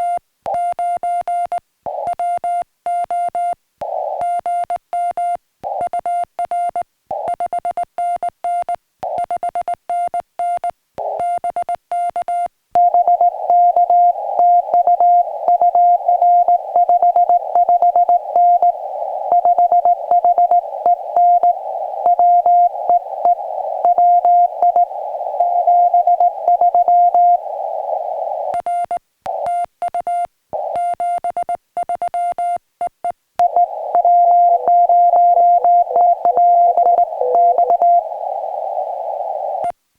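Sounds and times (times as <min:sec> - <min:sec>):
morse code tone: 0:33.4 - 0:38.1
radio band hiss: 0:33.4 - 0:39.6.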